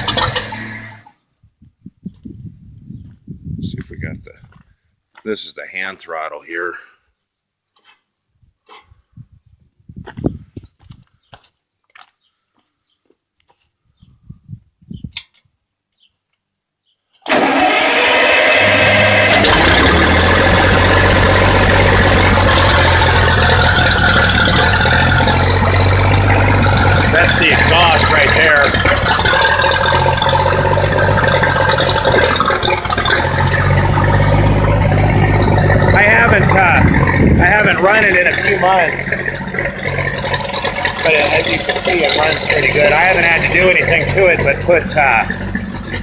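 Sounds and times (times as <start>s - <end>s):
engine starting and running: 0.0s - 1.2s, 17.2s - 46.0s.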